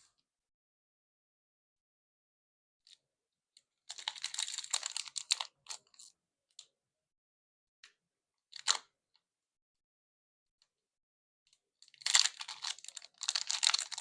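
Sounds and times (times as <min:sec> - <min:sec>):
card packaging crinkling: 0:12.0 - 0:14.0.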